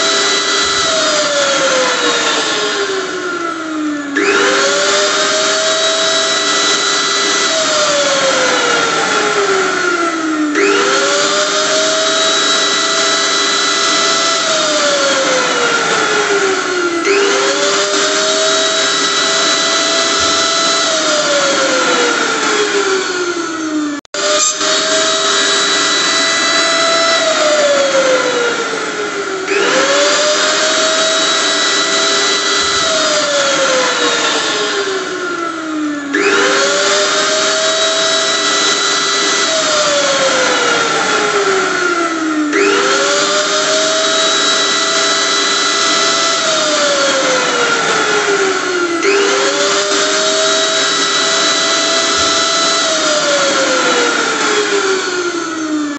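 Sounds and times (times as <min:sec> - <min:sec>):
electric blender motor whining: 0:00.0 - 0:55.9.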